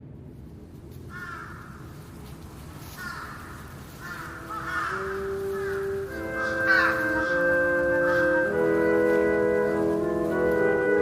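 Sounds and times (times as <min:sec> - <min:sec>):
bird calling: 0:01.1 - 0:11.0
held music notes: 0:02.2 - 0:11.0.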